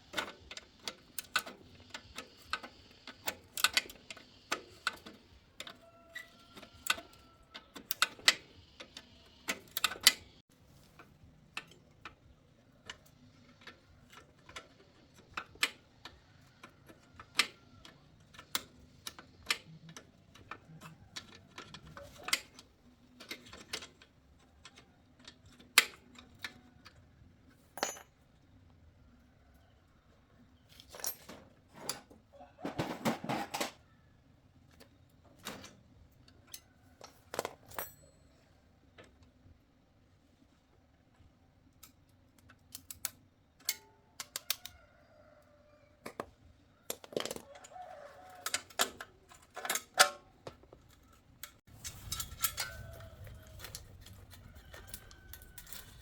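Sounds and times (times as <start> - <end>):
hand tools clicking on metal: 0.0 - 27.0, 41.8 - 44.7, 46.9 - 56.0.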